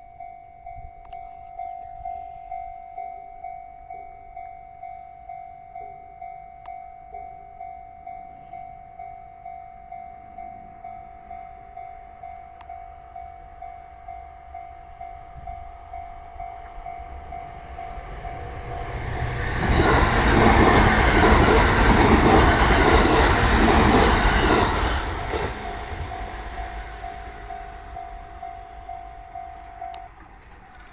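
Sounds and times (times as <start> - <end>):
level-crossing bell dinging: 0.0 - 30.4
train passing: 10.2 - 30.9.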